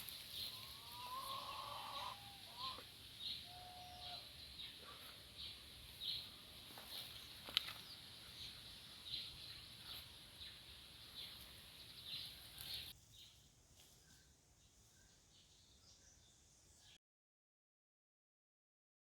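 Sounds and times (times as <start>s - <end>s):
faint bird chirps: 7.0s - 17.0s.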